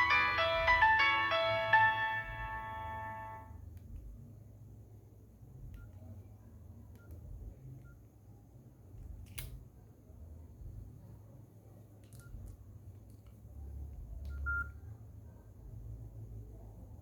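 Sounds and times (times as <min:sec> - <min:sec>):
keypad beeps: 0:14.3 - 0:14.8.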